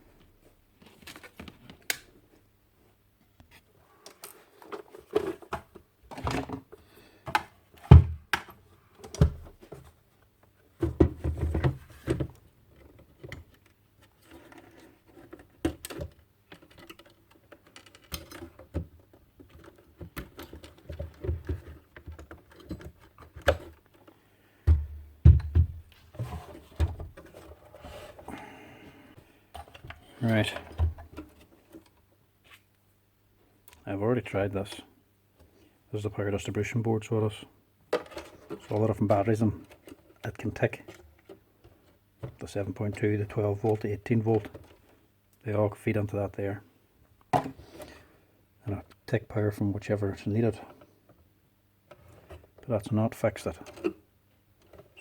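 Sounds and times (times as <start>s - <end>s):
plastic parts clicking and tapping: 3.4s - 9.8s, 10.4s - 27.6s, 37.9s - 43.0s
heavy thumps: 24.6s - 27.2s.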